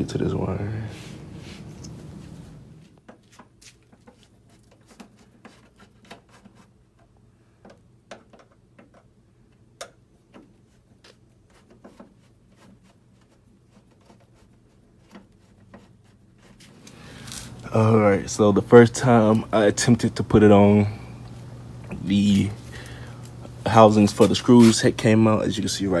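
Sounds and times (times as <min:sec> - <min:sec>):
steady low hum: 0:00.0 - 0:03.0, 0:16.3 - 0:26.0.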